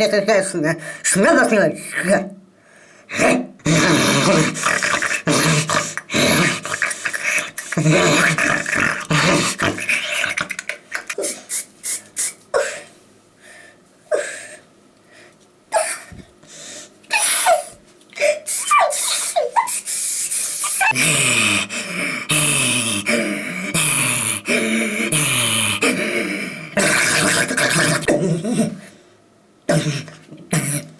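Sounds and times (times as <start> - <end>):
pitched throat warble: 3.2 - 12.4, 19.7 - 28.8
mouth clicks: 3.7 - 12.4.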